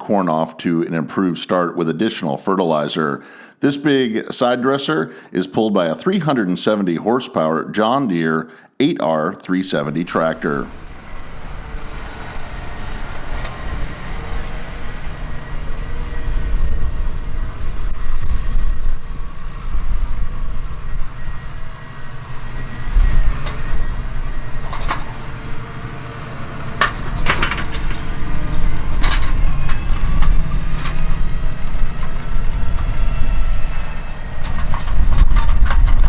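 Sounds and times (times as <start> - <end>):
tractor diesel engine rumbling: 9.6 - 36.0
sharp knocks or rattles: 26.8 - 33.0.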